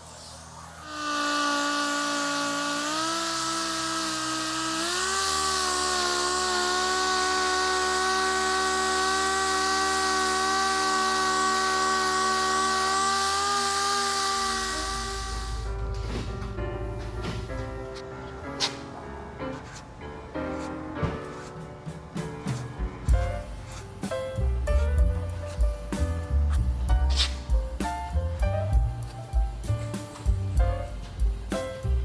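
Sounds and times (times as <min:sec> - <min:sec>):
power tool whining: 0:00.0 - 0:16.3.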